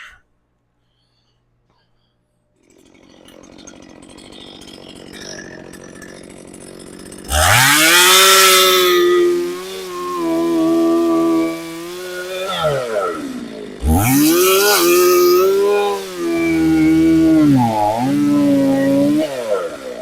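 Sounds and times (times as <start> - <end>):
chainsaw revving: 2.6 - 20.0.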